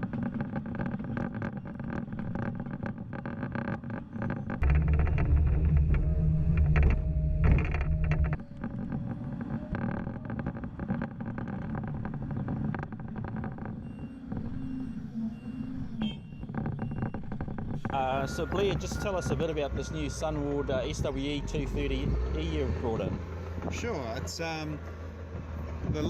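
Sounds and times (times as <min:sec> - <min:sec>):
excavator diesel engine running: 0:13.8 - 0:26.0
faint repeated beep: 0:17.9 - 0:21.0.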